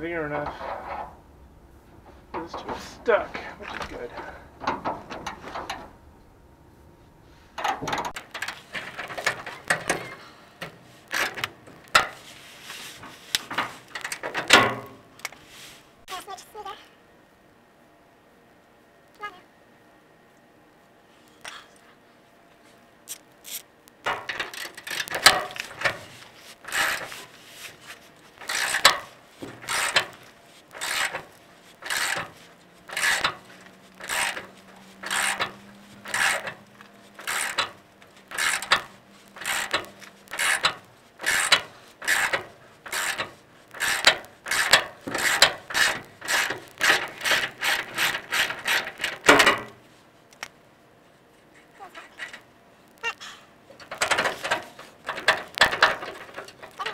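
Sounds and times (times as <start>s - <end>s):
ratchet wrench clicking: 35.0s - 36.4s, 37.2s - 49.0s.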